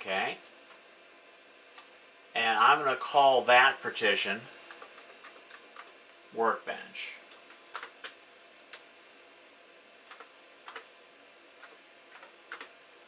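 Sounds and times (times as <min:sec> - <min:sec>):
computer keyboard clicks: 0:07.4 - 0:08.8, 0:10.0 - 0:10.9, 0:11.6 - 0:12.7.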